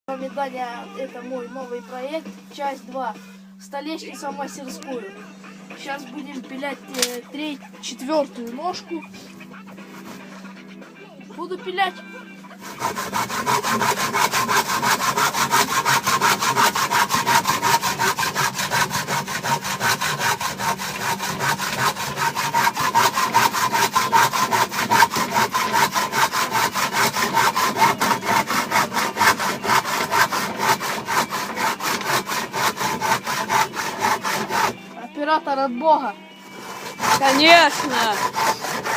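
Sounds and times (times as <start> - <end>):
hand saw cutting wood: 6.8 - 7.2, 12.5 - 34.8, 36.4 - 38.9.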